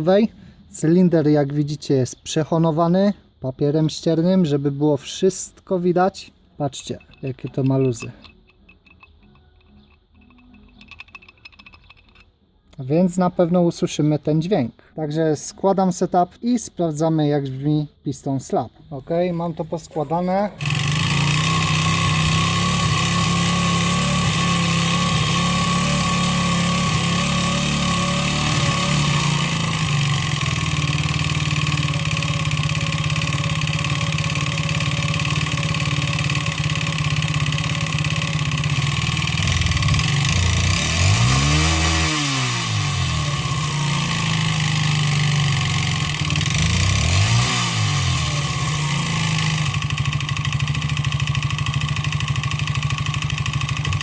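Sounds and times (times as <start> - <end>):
scooter engine knocking with piston slap: 6.8 - 12.2, 20.6 - 42.4, 43.7 - 54.0
scooter engine revving: 20.1 - 54.0.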